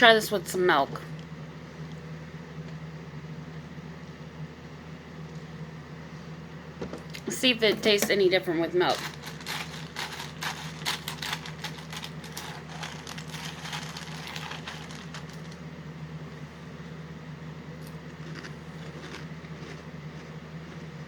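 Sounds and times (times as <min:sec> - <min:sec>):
steady low hum: 0:00.0 - 0:21.0
cereal being chewed: 0:08.9 - 0:15.6, 0:17.8 - 0:21.0.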